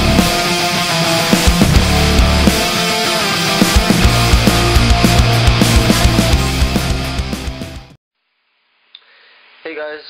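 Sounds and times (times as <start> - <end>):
distorted guitar: 0.0 - 8.0
heavy rock music: 0.0 - 8.0
fast drum hits: 1.2 - 6.7.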